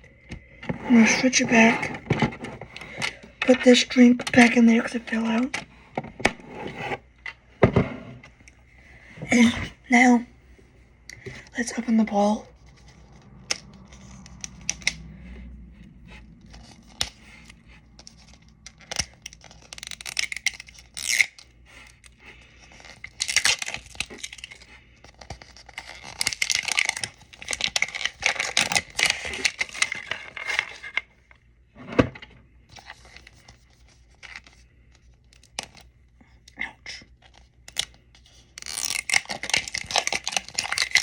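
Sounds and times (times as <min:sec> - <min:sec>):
plastic wrapping tearing and crinkling: 0:16.2 - 0:31.1, 0:32.7 - 0:35.9, 0:37.1 - 0:41.0.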